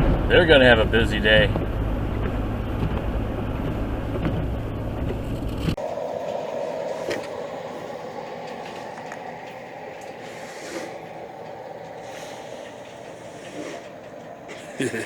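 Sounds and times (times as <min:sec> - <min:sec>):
steady hum: 0:00.0 - 0:15.0
truck cabin rumble: 0:00.0 - 0:15.0.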